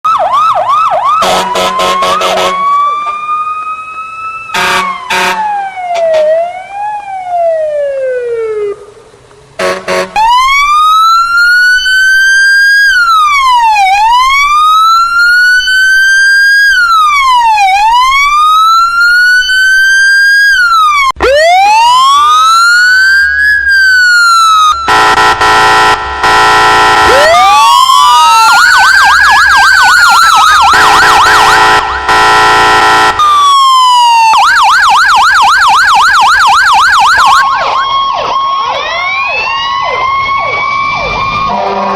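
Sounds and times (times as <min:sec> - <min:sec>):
emergency vehicle siren: 0:00.0 - 0:41.9
horn blasts: 0:01.2 - 0:02.6, 0:04.5 - 0:06.3, 0:09.6 - 0:10.3, 0:24.9 - 0:27.2, 0:30.7 - 0:33.2, 0:41.4 - 0:41.9.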